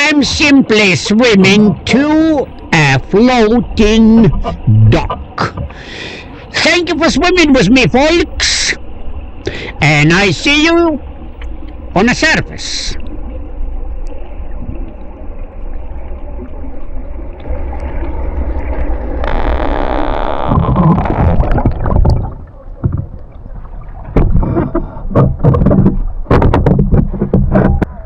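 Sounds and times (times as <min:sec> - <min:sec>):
sharp water splashes: 0:00.0 - 0:26.7
underwater low rumble: 0:00.0 - 0:28.0.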